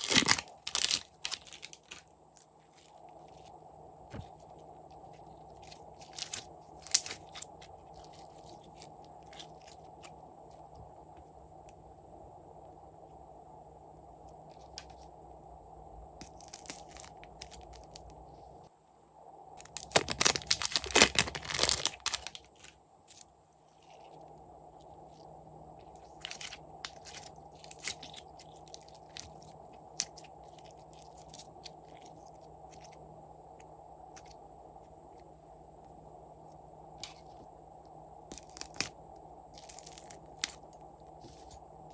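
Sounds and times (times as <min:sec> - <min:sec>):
slime crackling and popping: 0:00.0 - 0:02.0, 0:19.6 - 0:22.7
faint steady hum: 0:00.0 - 0:41.9.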